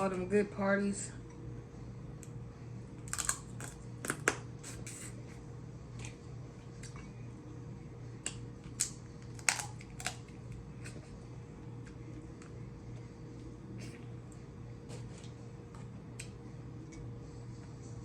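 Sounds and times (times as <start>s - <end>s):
steady low hum: 0.0s - 18.0s
crab shells cracking: 3.1s - 4.4s, 8.7s - 10.3s.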